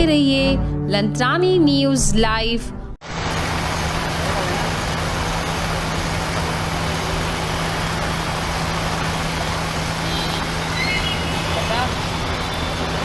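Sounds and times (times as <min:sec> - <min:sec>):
road traffic hum: 0:03.1 - 0:13.0.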